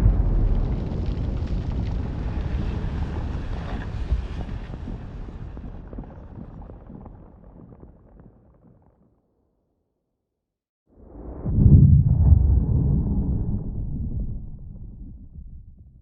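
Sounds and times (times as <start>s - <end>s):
explosion rumble with crackles: 0.0s - 9.2s, 10.9s - 16.0s.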